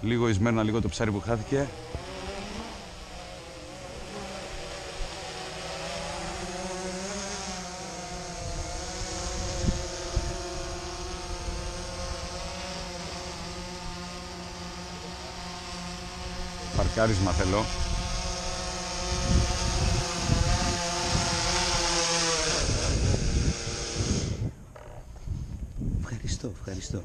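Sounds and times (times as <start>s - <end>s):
drone propellers buzzing: 0.0s - 26.0s
wind buffeting microphone: 7.6s - 14.6s, 16.0s - 27.0s.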